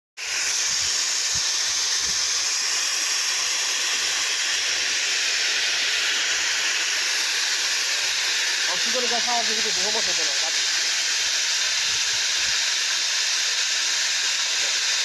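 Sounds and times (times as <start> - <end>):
gas cutting torch hissing: 0.2 - 15.0.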